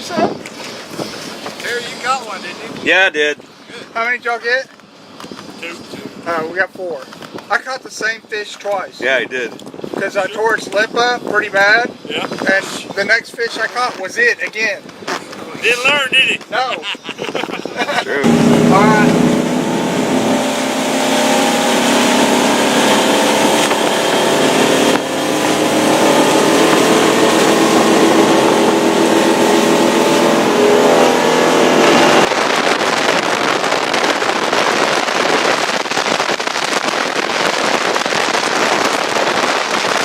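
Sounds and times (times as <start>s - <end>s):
harsh rushing noise: 17.4s - 40.0s
boat motor running: 17.8s - 32.3s.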